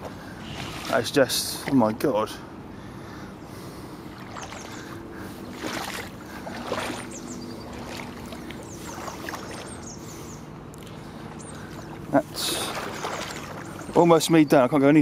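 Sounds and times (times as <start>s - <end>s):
floodwater sloshing and splashing: 0.0s - 2.0s, 3.7s - 14.3s
small birds chirping faintly: 2.8s - 15.0s.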